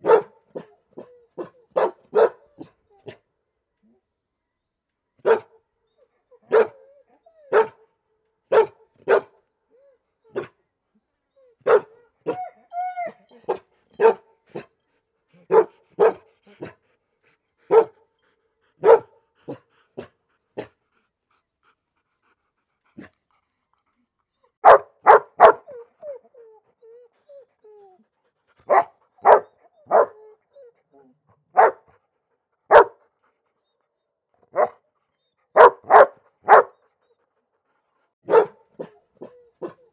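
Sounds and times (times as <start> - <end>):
dog barking: 0.0 - 0.7, 1.4 - 2.7, 5.2 - 5.5, 6.5 - 6.8, 7.5 - 7.8, 8.5 - 9.4, 11.6 - 12.0, 13.5 - 14.3, 15.5 - 16.2, 17.7 - 18.0, 18.8 - 19.6, 24.6 - 25.7, 28.7 - 30.2, 31.5 - 31.9, 32.7 - 33.0, 34.5 - 34.8, 35.6 - 36.8, 38.2 - 39.0
dog whimpering: 11.4 - 14.0.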